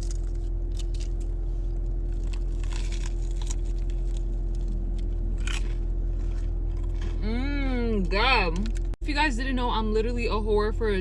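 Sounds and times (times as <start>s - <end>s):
crunchy biting and chewing: 0.0s - 7.2s
low hum: 0.0s - 11.0s.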